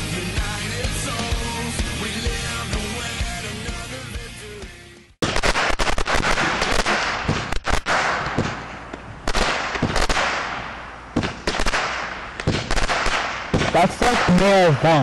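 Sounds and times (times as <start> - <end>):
fireworks popping and banging: 5.2 - 15.0.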